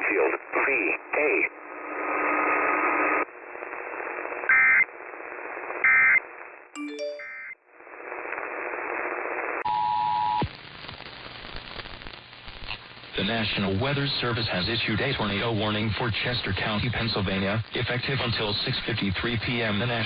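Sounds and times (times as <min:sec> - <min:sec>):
radio static hiss: 0:00.0 - 0:06.6, 0:07.8 - 0:20.0
two-tone beep: 0:06.8 - 0:07.5.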